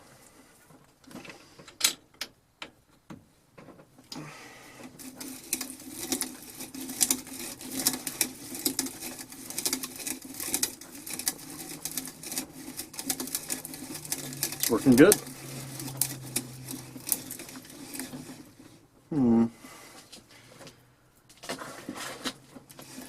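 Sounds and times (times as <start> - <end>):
hand drill whirring and clicking: 4.8 - 18.8, 21.3 - 23.0.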